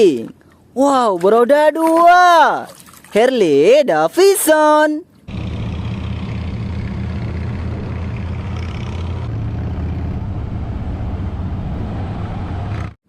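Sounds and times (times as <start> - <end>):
motorcycle engine idling: 5.3 - 9.9.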